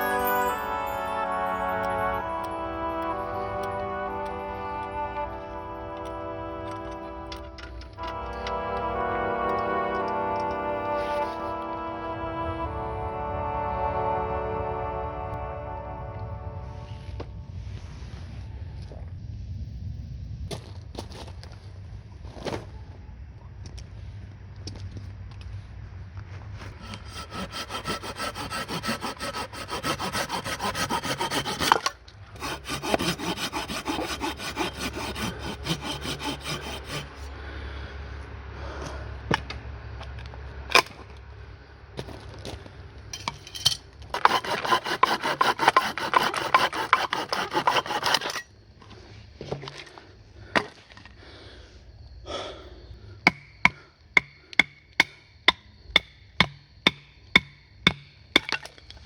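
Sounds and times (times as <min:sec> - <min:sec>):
hand saw cutting wood: 0:26.7 - 0:37.3, 0:44.1 - 0:48.5.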